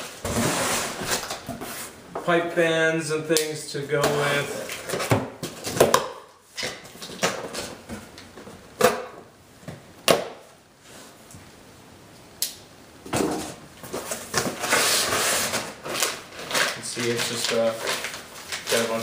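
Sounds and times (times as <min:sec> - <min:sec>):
packing material rustling: 0:13.9 - 0:19.0.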